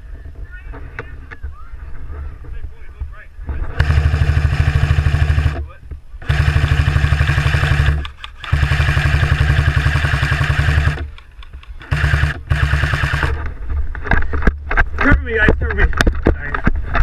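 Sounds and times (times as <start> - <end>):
airsoft gun firing bursts: 3.8 - 5.6, 6.2 - 13.4.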